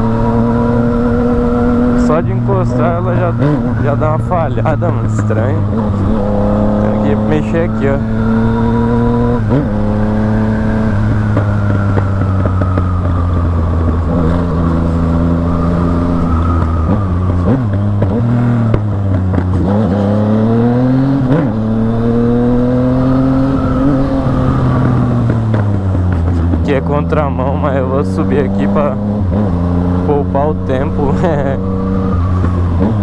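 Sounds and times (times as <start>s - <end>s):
motorcycle engine running: 0.0s - 33.0s
person talking: 2.0s - 8.2s, 26.4s - 29.0s, 30.0s - 31.6s.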